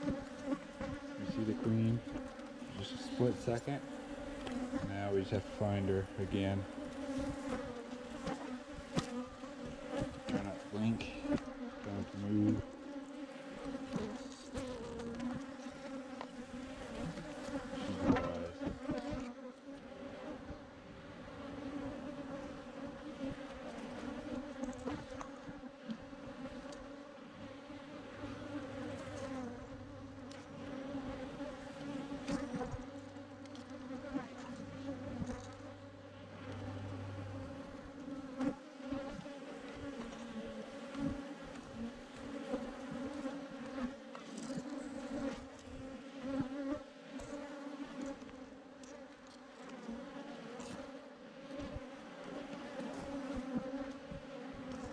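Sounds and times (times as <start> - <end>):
bee swarm buzzing: 0.0 - 54.9.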